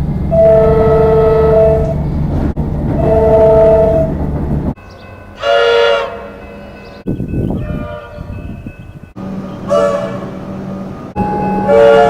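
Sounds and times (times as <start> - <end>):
train rumble: 0.0 - 12.0
two-note train horn: 0.3 - 2.0, 3.0 - 4.1, 5.4 - 6.5, 9.6 - 10.5, 11.2 - 12.0.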